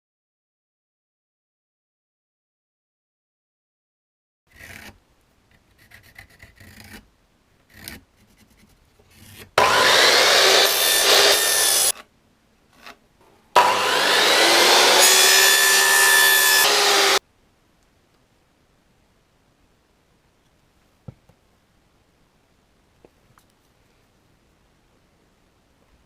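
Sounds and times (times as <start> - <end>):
jigsaw cutting wood: 9.6 - 11.9, 13.6 - 17.2
faint knocks and handling: 21.0 - 21.4.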